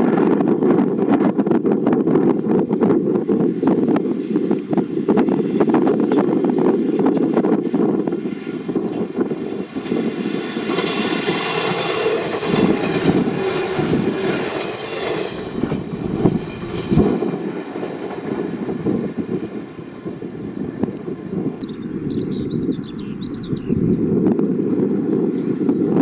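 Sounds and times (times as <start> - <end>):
wind buffeting microphone: 0.0 - 26.0
electric train running past: 2.6 - 26.0.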